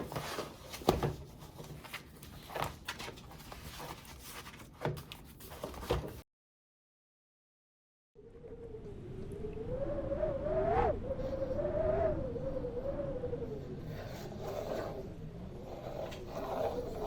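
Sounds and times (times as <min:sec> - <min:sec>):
faint low rumble: 0:08.2 - 0:17.0.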